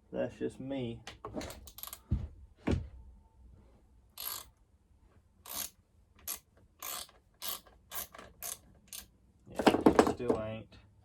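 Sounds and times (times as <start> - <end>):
rasping ratchety strokes: 4.2 - 4.5, 5.5 - 9.1.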